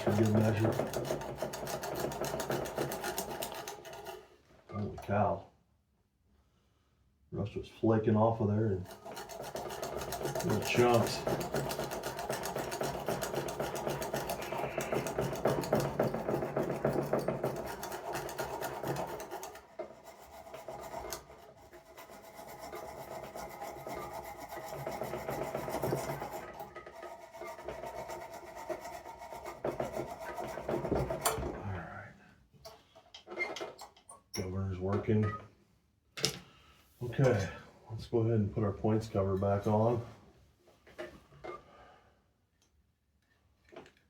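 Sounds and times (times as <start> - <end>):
scraping rust off metal: 0.0 - 4.3, 8.8 - 31.4.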